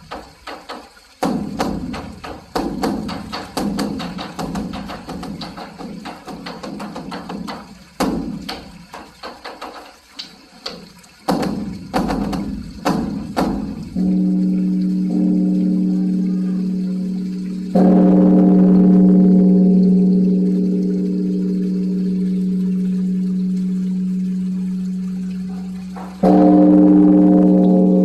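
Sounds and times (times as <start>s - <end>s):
drum beats: 0.0s - 17.9s, 25.4s - 26.5s
large bronze bell ringing: 13.9s - 28.0s.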